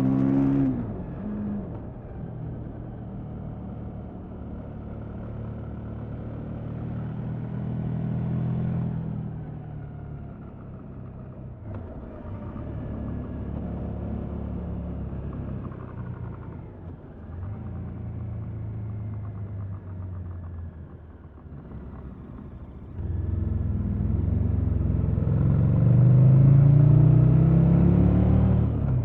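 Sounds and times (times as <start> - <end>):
motorcycle engine revving: 21.6 - 29.0.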